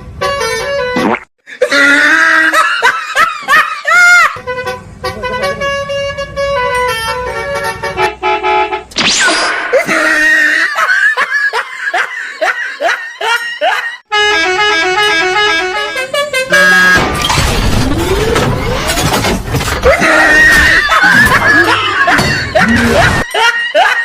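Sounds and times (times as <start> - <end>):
musical bus horn melody: 0.0 - 1.0, 4.4 - 8.9, 14.0 - 22.6
people laughing: 1.5 - 4.4, 9.7 - 14.0, 19.8 - 24.0
gliding squeals: 17.0 - 22.8.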